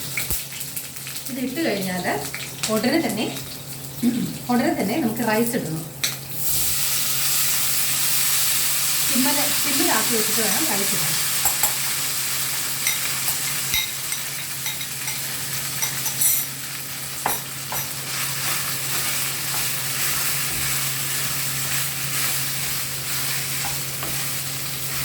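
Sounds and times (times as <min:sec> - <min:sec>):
oil sizzling in a pan: 0:00.0 - 0:25.0
spoon scraping and knocking pan: 0:12.9 - 0:16.5, 0:17.2 - 0:25.0.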